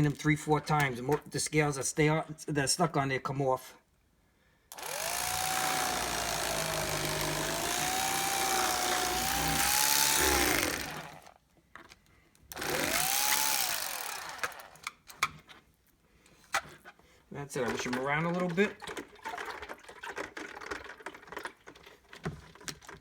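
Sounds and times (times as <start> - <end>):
power tool motor whirring: 4.7 - 11.3, 12.5 - 14.9.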